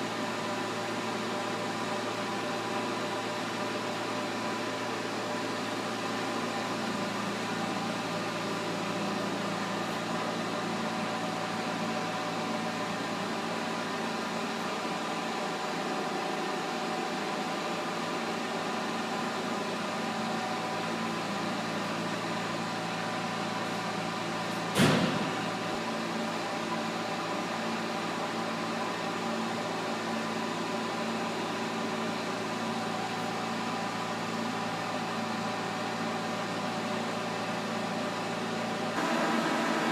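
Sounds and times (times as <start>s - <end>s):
lathe running hum: 0.0s - 39.9s
sharp knock: 24.8s - 25.3s.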